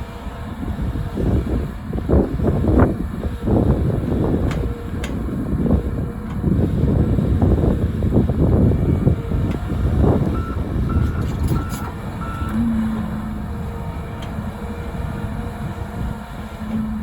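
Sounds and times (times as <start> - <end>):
excavator engine and hydraulics: 0.0 - 17.0
backup alarm beeping: 10.2 - 13.6.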